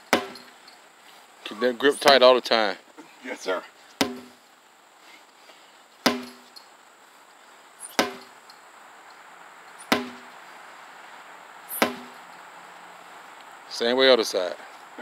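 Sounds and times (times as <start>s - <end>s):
sledgehammer strikes ringing: 0.1s - 0.5s, 4.0s - 4.4s, 6.1s - 6.5s, 7.9s - 8.4s, 9.9s - 10.3s, 11.7s - 12.2s.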